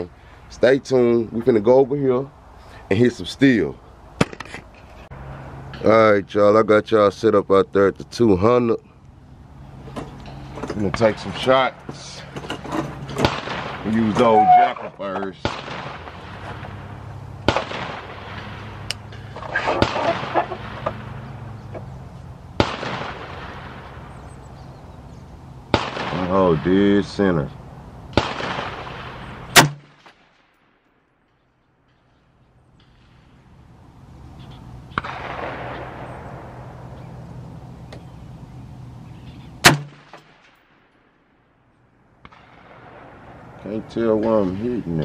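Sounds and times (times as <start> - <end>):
rifle shots with echo: 13.2 - 14.6, 15.4 - 18.9, 22.6 - 24.2, 25.7 - 26.9, 28.1 - 30.7, 34.9 - 36.8, 39.6 - 41.0, 42.2 - 43.6
low hum: 31.3 - 43.8.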